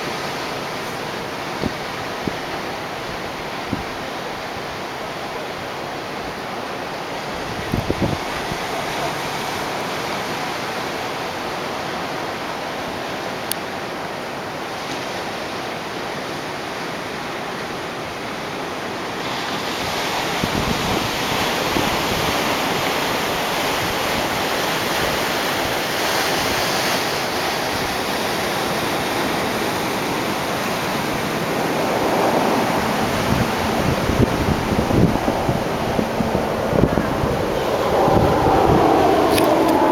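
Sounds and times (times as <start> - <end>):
waves breaking on beach: 0.0 - 39.9
wind buffeting microphone: 7.2 - 10.0, 20.2 - 39.9.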